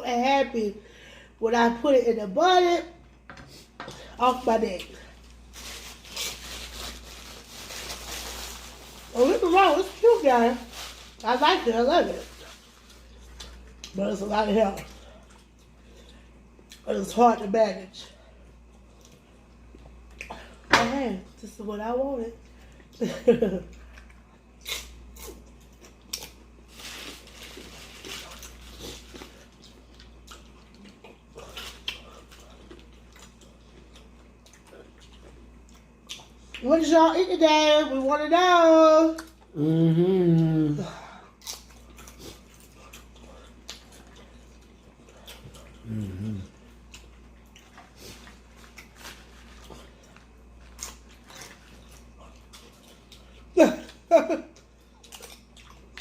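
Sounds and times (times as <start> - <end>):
crunching and chewing: 4.8 - 9.1, 12.2 - 14.0, 18.4 - 20.6, 23.6 - 36.6, 41.2 - 56.0.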